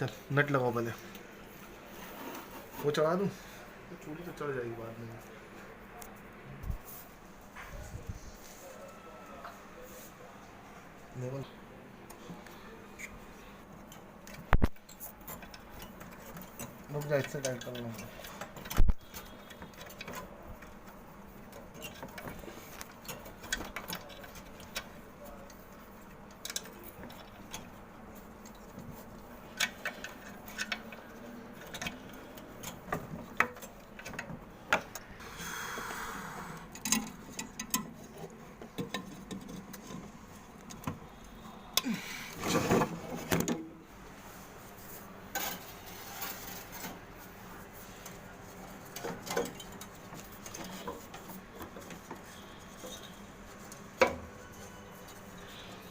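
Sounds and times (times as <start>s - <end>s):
hand tools clicking and tapping: 36.7s - 41.0s.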